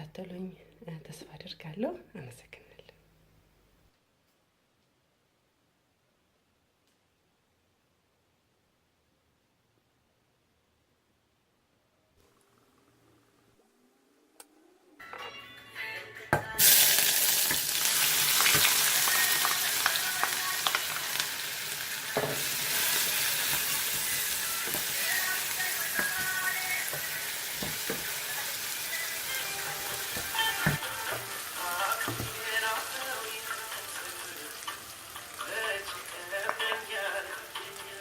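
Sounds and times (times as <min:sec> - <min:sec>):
food sizzling in hot oil: 0:16.6 - 0:38.0.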